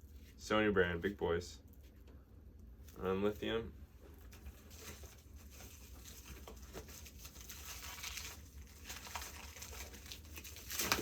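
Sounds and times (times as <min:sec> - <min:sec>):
packaging rustling: 0:04.3 - 0:11.0.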